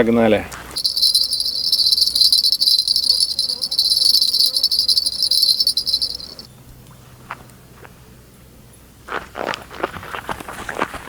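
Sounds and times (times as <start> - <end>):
insects chorus: 0.8 - 6.5.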